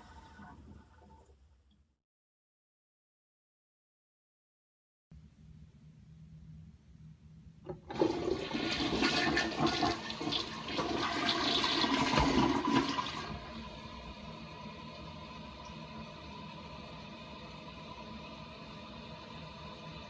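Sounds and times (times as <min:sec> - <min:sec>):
toilet water rushing: 0:00.0 - 0:01.3, 0:07.7 - 0:20.0
toilet flush lever click: 0:11.8 - 0:13.4.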